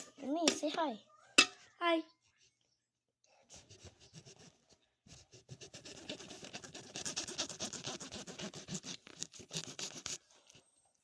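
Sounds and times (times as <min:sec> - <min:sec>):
knife sawing through fruit: 0:03.5 - 0:10.3.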